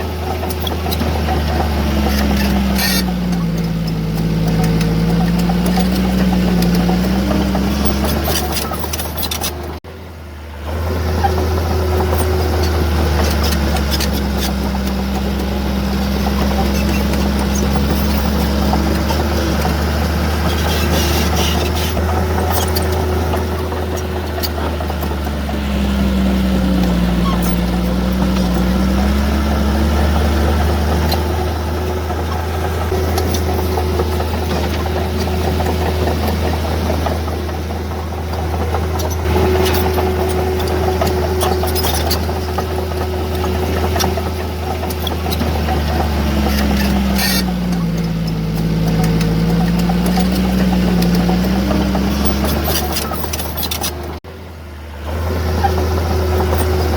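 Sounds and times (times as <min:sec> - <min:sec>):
heavy machinery diesel engine: 0:00.0 - 0:56.9.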